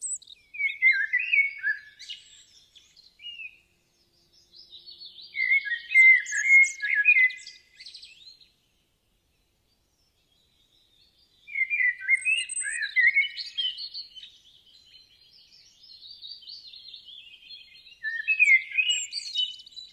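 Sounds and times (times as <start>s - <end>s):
songbird singing: 0.0s - 19.9s.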